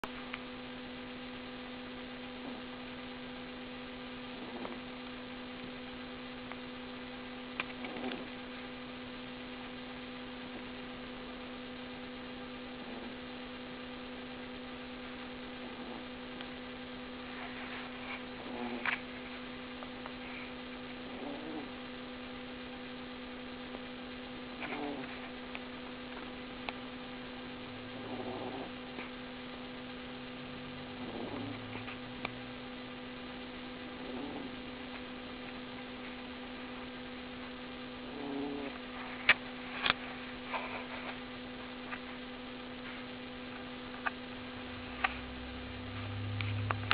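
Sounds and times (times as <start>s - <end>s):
steady electrical hum: 0.0s - 46.9s
person snoring softly: 2.3s - 2.9s, 4.2s - 5.1s, 7.7s - 8.5s, 12.7s - 13.5s, 15.4s - 16.3s, 17.2s - 19.5s, 20.2s - 21.9s, 24.6s - 25.5s, 27.8s - 29.2s, 30.7s - 32.3s, 33.8s - 34.9s, 38.0s - 41.2s.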